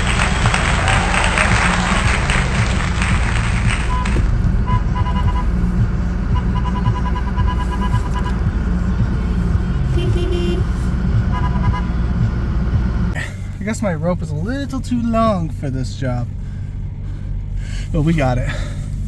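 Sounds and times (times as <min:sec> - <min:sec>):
vehicle engine rumbling: 0:00.0 - 0:19.0
rapid warning chime beeps: 0:04.7 - 0:05.5, 0:06.3 - 0:08.4.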